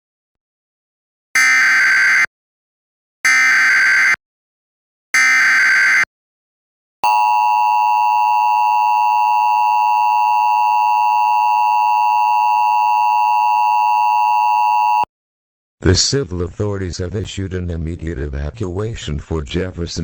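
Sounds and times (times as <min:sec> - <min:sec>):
steady attention tone: 0:07.0 - 0:15.1.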